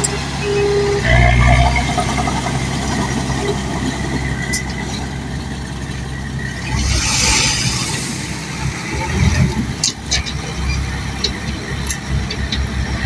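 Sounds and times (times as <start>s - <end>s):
bulldozer diesel engine running: 0.0s - 13.0s
rush of noise: 6.5s - 10.1s.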